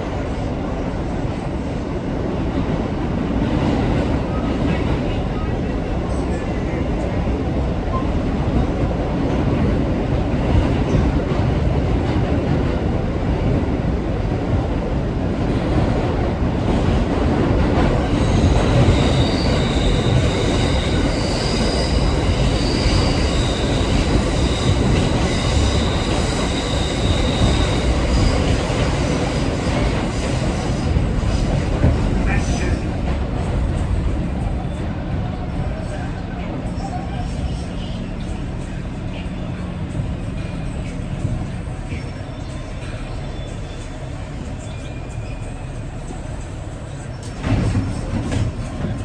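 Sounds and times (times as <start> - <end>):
subway train rumbling: 0.0 - 49.0
high-pitched wheel squeal: 18.0 - 29.2
wheels clattering on track: 47.2 - 49.0.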